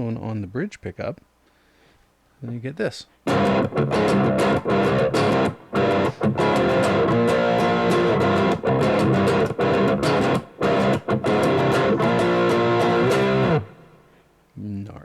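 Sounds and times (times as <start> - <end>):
distorted electric guitar chords: 3.2 - 14.2.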